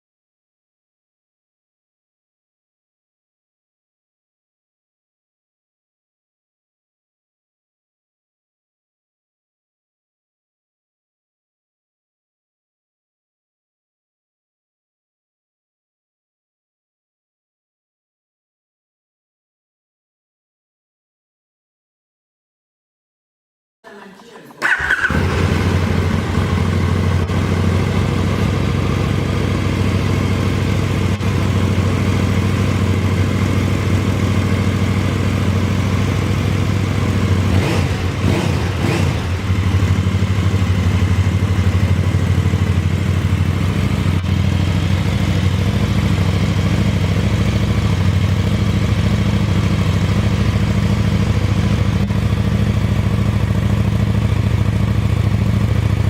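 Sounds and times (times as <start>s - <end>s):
motorcycle engine idling: 24.6s - 56.0s.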